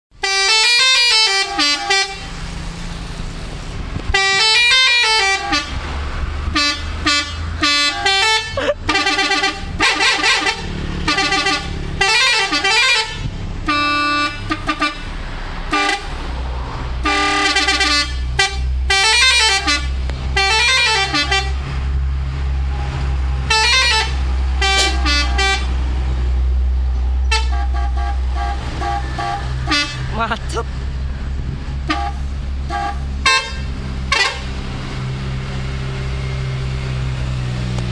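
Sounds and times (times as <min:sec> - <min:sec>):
multi-tone bus horn melody: 0:00.1 - 0:03.1, 0:04.0 - 0:16.3, 0:17.0 - 0:21.9, 0:23.4 - 0:26.1, 0:27.2 - 0:30.7, 0:31.4 - 0:35.0
bus engine running: 0:00.1 - 0:37.9.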